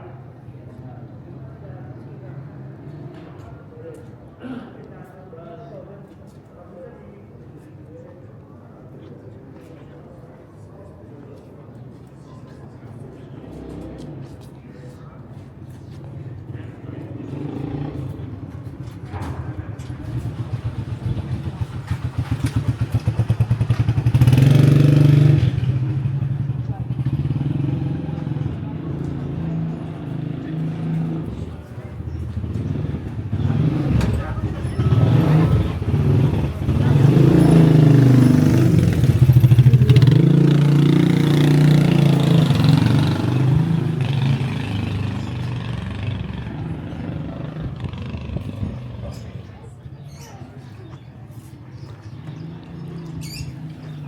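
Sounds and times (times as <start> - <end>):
motorcycle engine passing by: 16.9 - 54.0.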